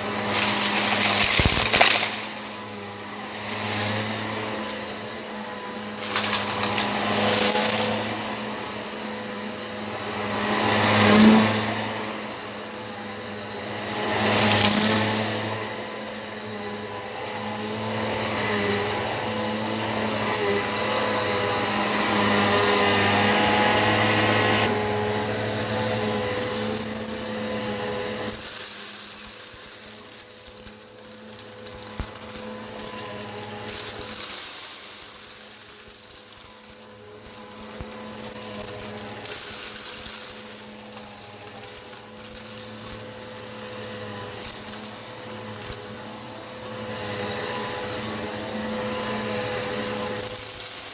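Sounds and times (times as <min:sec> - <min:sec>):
debris rattling in vacuum: 0:00.0 - 0:09.5, 0:22.0 - 0:50.9
vacuum cleaner motor hum and whine: 0:00.0 - 0:50.9.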